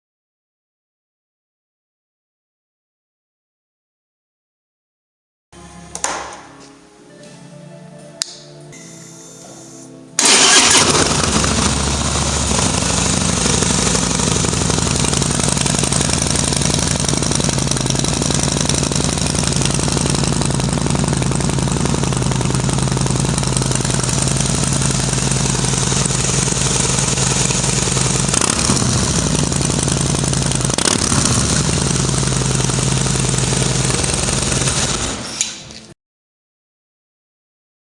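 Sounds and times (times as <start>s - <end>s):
motorcycle engine idling: 10.2s - 35.3s.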